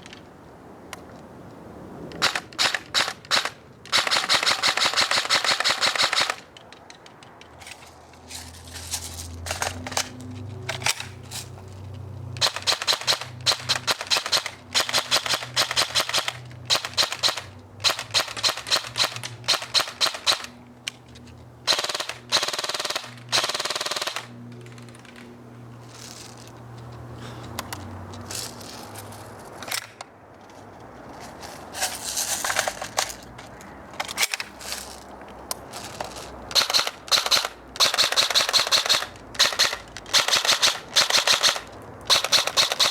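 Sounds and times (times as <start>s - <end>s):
airsoft rifle firing full-auto: 2.2s - 6.4s, 12.4s - 20.5s, 21.7s - 24.3s, 36.5s - 42.9s.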